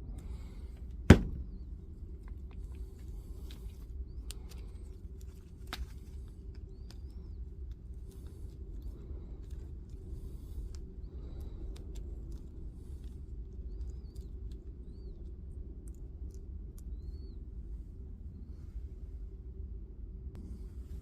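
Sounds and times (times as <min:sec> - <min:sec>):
steady low hum: 0:00.0 - 0:21.0
sharp knock: 0:01.1 - 0:01.5.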